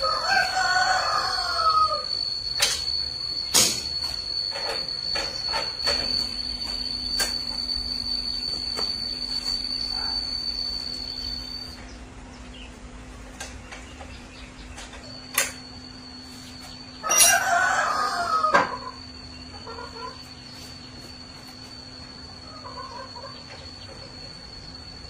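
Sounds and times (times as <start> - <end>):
bird crowing call: 0.0 - 2.3, 17.0 - 20.3
low hum: 0.0 - 25.0
steady high whine: 0.0 - 25.0.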